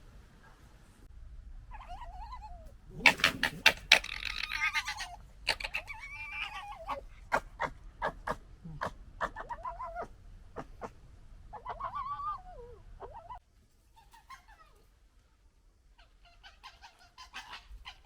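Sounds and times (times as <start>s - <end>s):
fox whining cries: 1.7s - 7.2s
foxes gekkering clicks: 2.6s - 7.5s.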